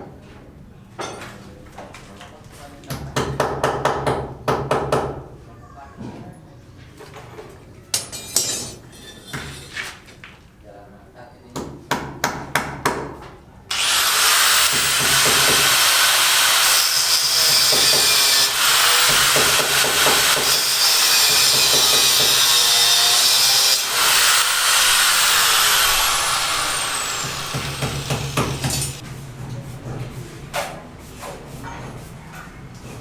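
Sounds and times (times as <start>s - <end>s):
power tool motor whine: 13.7s - 29.0s.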